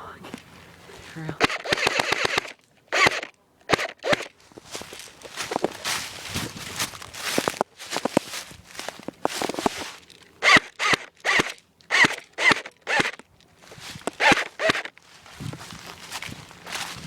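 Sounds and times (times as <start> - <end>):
footsteps crunching through dry leaves: 4.2 - 11.0, 13.6 - 17.0
soft rustle: 4.3 - 10.3, 13.4 - 14.3, 14.9 - 17.0.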